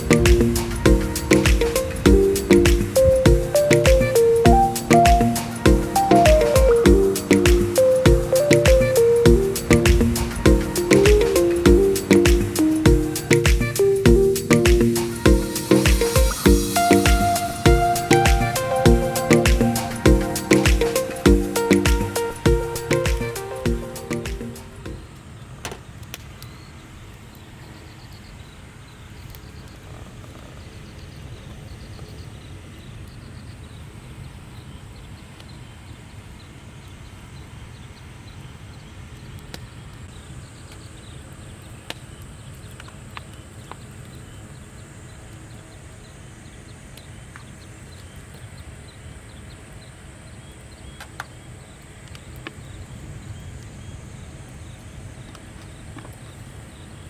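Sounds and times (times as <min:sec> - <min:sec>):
sharp crackles and clicks: 0:00.0 - 0:25.0
short high chirps: 0:00.0 - 0:25.0.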